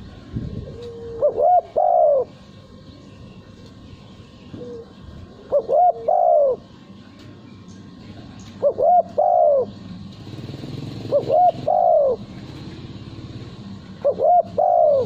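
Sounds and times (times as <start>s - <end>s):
dove cooing: 0.0s - 2.8s, 4.5s - 6.8s, 8.4s - 13.0s, 13.8s - 15.0s.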